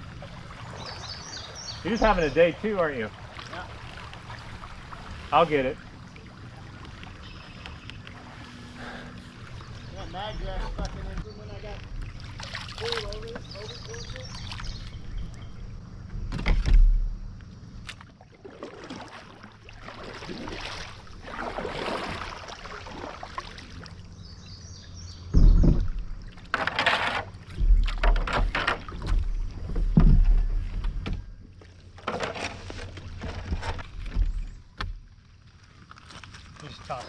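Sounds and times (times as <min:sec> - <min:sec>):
paddle splashing through water: 0:00.0 - 0:15.4, 0:17.8 - 0:37.0
knocks against kayak hull: 0:25.2 - 0:26.7, 0:27.5 - 0:31.3.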